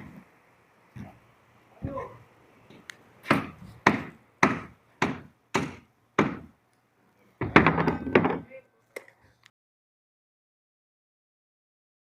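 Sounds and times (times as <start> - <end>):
evenly spaced knocks: 3.3 - 6.5, 7.4 - 8.5.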